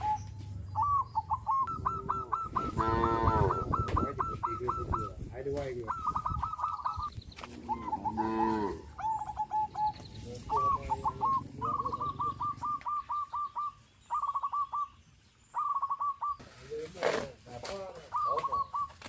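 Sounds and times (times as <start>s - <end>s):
bird chattering calls: 0.0s - 19.0s
cow mooing: 2.7s - 3.6s, 8.1s - 8.8s.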